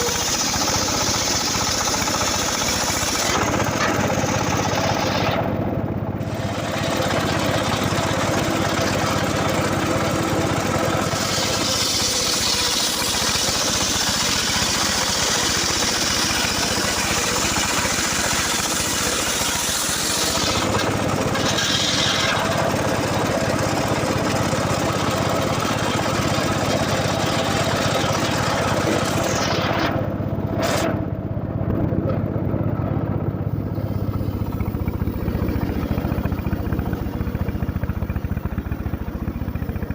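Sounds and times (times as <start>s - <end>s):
saw cutting into wood: 0.0s - 5.5s, 10.9s - 23.1s
engine-driven wood saw running: 0.0s - 39.9s.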